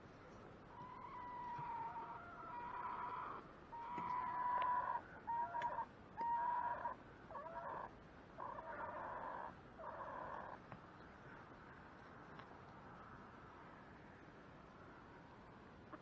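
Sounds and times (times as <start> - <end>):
chickens calling: 0.8 - 10.6.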